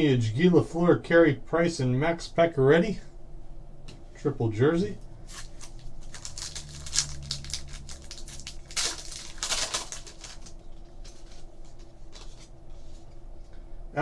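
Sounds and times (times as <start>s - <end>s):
card pack wrappers crinkling: 5.2s - 13.1s.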